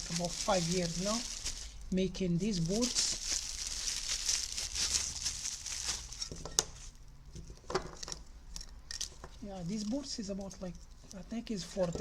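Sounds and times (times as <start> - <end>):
packaging crinkling: 0.0 - 6.6.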